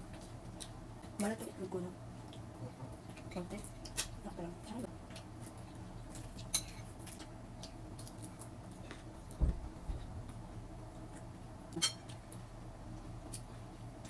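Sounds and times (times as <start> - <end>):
dull thump: 9.4 - 10.2.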